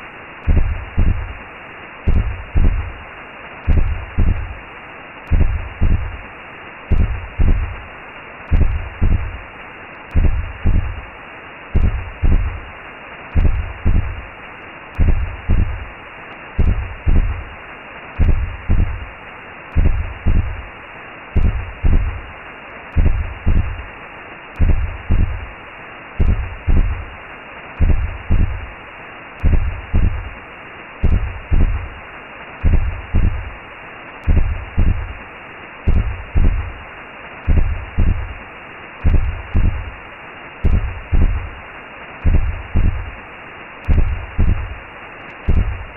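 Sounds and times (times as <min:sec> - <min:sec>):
whooshing hiss: 0:00.0 - 0:35.3, 0:35.9 - 0:45.9
low heartbeat thumping: 0:00.4 - 0:01.4, 0:02.1 - 0:03.0, 0:03.6 - 0:04.6, 0:05.3 - 0:06.2, 0:06.9 - 0:07.8, 0:08.5 - 0:09.4, 0:10.1 - 0:11.0, 0:11.8 - 0:12.6, 0:13.4 - 0:14.2, 0:15.0 - 0:15.9, 0:16.6 - 0:17.5, 0:18.2 - 0:19.1, 0:19.7 - 0:20.6, 0:21.4 - 0:22.2, 0:23.0 - 0:23.8, 0:24.6 - 0:25.5, 0:26.2 - 0:27.1, 0:27.8 - 0:28.7, 0:29.4 - 0:30.3, 0:31.0 - 0:31.9, 0:32.6 - 0:33.5, 0:34.2 - 0:35.2, 0:35.9 - 0:36.7, 0:37.5 - 0:38.4, 0:39.0 - 0:39.9, 0:40.6 - 0:41.5, 0:42.2 - 0:43.1, 0:43.8 - 0:44.8, 0:45.4 - 0:45.9.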